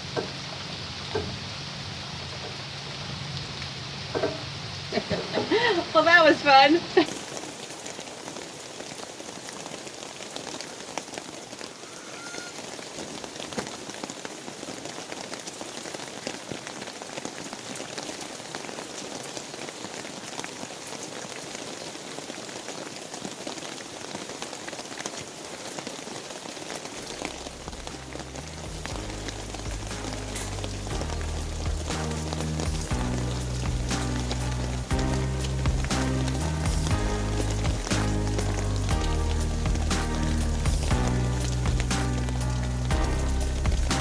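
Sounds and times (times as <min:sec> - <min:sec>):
rain pattering: 0:00.0 - 0:44.0
low background music: 0:27.3 - 0:44.0.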